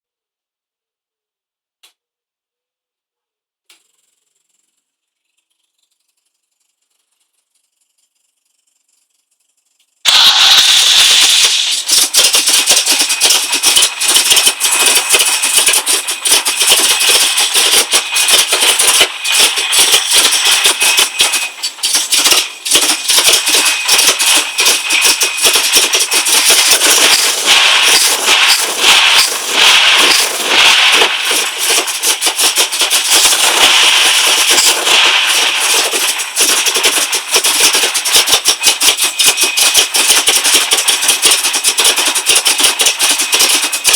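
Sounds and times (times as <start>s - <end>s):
engine idling roughly: 10.1s - 43.9s.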